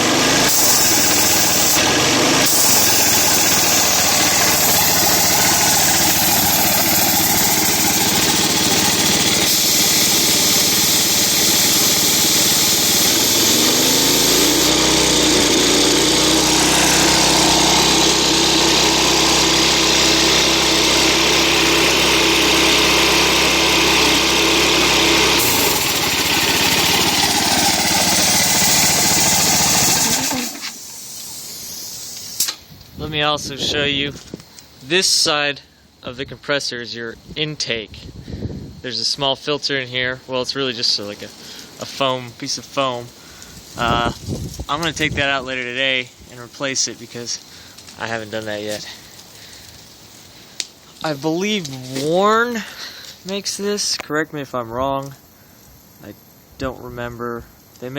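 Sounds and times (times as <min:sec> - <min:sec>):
air compressor engine running: 0:00.0 - 0:33.6, 0:41.0 - 0:53.6.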